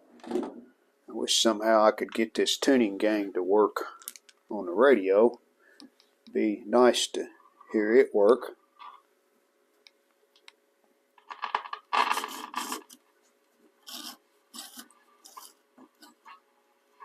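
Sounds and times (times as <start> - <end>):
faint steady hum: 0.0 - 17.0
radio tuning dial scraping: 13.8 - 16.4.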